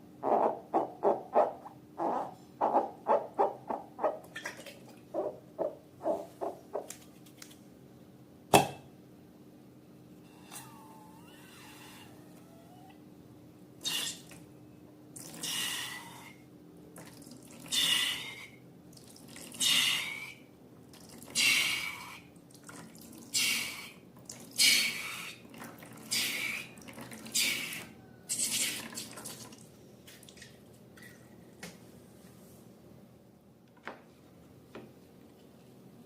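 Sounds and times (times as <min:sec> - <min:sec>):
wet squishy noises: 0:20.8 - 0:31.3.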